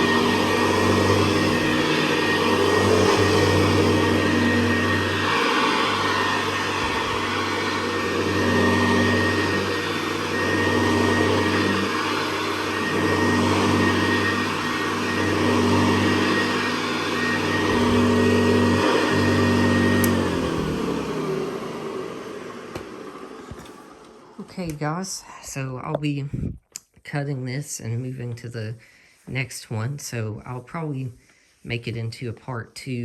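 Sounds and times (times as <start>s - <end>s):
vacuum cleaner motor humming: 0.0s - 25.0s.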